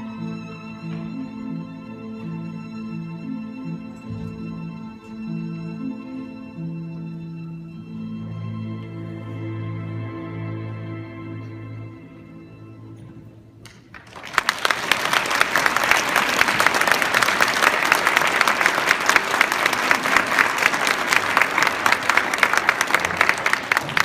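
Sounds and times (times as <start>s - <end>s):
audience applauding: 13.6s - 24.0s.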